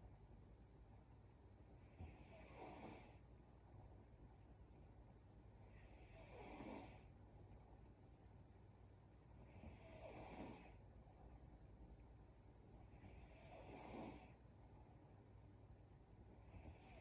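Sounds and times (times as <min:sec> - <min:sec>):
woman snoring faintly: 0:05.8 - 0:07.1, 0:09.5 - 0:10.8, 0:13.0 - 0:14.4.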